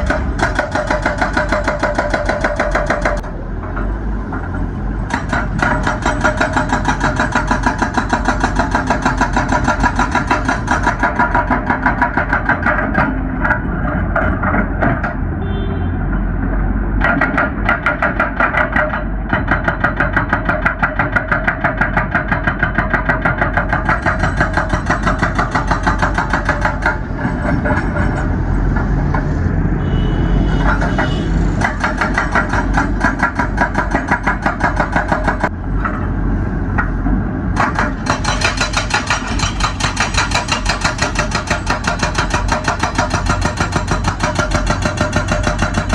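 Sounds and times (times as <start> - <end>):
hydraulic breaker hammering rock: 0.0 - 3.3, 5.1 - 15.2, 17.0 - 29.3, 30.6 - 36.0, 37.6 - 45.9
excavator engine running: 0.0 - 45.9.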